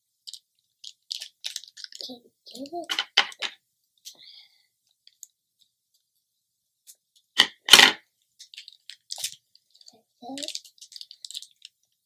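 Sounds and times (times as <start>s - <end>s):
plastic crinkling tear: 0.3s - 2.1s, 8.4s - 11.8s.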